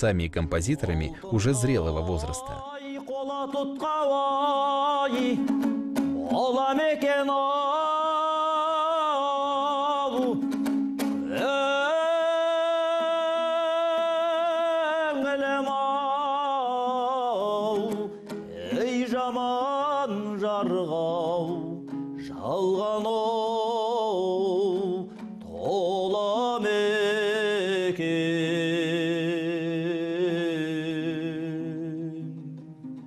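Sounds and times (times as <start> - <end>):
folk singing with vibrato: 0.6 - 32.9.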